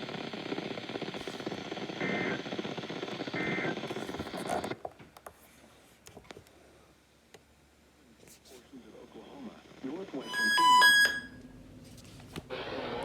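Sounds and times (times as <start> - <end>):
radio static: 0.0 - 4.8, 8.6 - 10.8, 12.5 - 13.0.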